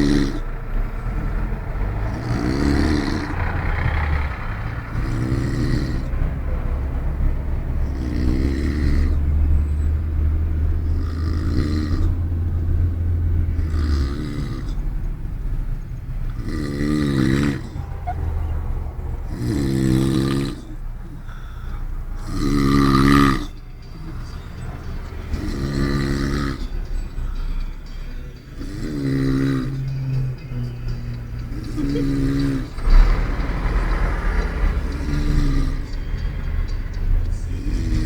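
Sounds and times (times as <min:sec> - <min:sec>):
man snoring loudly: 0:00.0 - 0:00.4, 0:01.8 - 0:03.5, 0:04.8 - 0:06.1, 0:07.8 - 0:09.4, 0:10.8 - 0:12.2, 0:13.6 - 0:14.8, 0:16.4 - 0:18.1, 0:19.3 - 0:20.8, 0:22.2 - 0:24.2, 0:25.3 - 0:26.8, 0:28.6 - 0:30.4, 0:31.5 - 0:36.0, 0:37.6 - 0:38.0
car road and engine rumble: 0:00.0 - 0:38.0.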